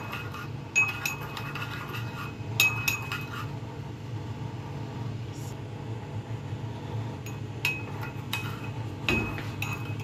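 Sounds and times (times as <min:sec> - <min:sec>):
spoon clinking against bowl: 0:00.0 - 0:03.5, 0:07.2 - 0:10.0.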